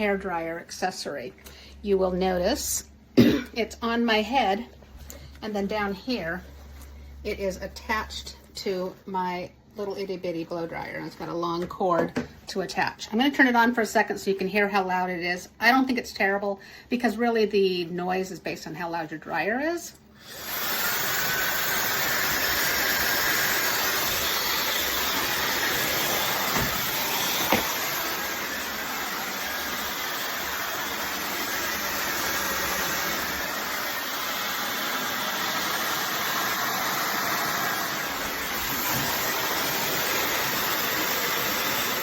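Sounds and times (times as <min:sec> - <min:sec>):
blow dryer rush of air: 0:20.2 - 0:42.0.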